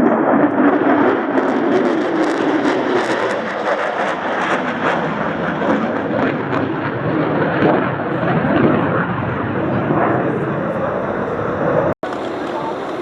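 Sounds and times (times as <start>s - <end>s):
aircraft engine roar: 0.0s - 13.0s.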